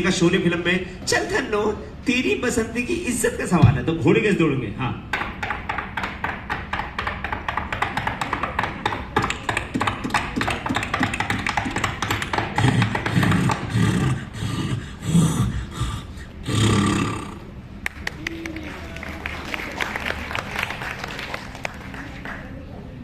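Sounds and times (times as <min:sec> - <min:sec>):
galloping horse hooves clopping: 0:07.2 - 0:13.6.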